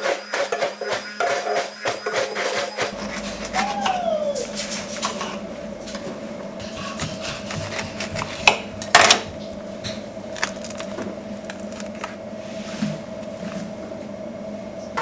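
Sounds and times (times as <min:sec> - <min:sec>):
containers clattering: 0:00.0 - 0:12.2
steady low hum: 0:02.9 - 0:15.0
plastic containers clicking and knocking: 0:07.0 - 0:12.2.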